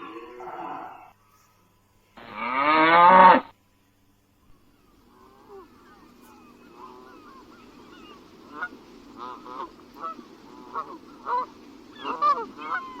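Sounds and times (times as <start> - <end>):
geese honking: 4.6 - 13.0.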